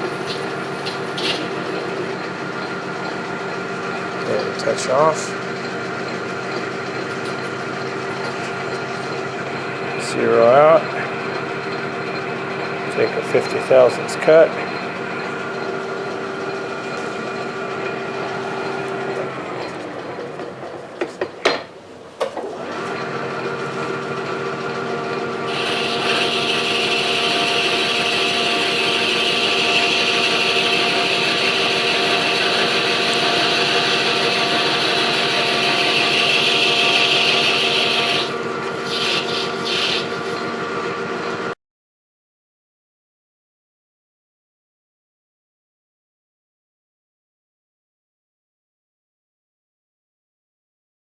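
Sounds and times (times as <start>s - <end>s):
cutting tool hissing: 0.0s - 40.7s
metal lathe motor humming: 0.0s - 41.5s.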